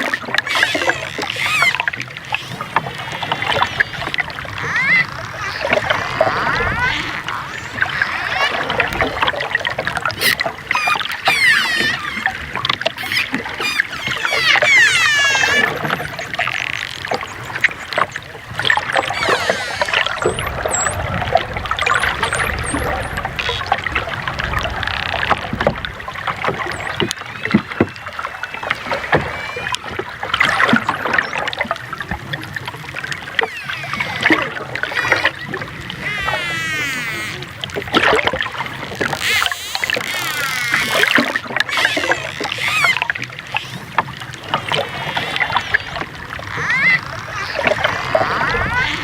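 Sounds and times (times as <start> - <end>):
dolphins whistling: 0.4 - 25.2, 26.4 - 31.7, 33.2 - 37.6, 38.7 - 49.0
dolphin chirps: 0.5 - 9.2, 10.2 - 21.2, 21.8 - 23.7, 34.9 - 37.5, 41.7 - 43.9, 44.5 - 49.0
dolphin clicks: 10.1 - 21.0, 33.4 - 49.0.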